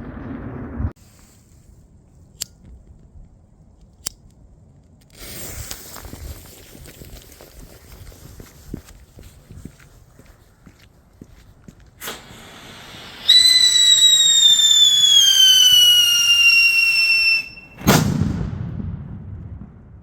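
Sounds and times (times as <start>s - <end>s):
firework crack and hiss: 5.1s - 8.7s, 12.0s - 17.5s
falling firework whistle: 12.0s - 18.0s
firework bang with echo: 17.8s - 20.0s.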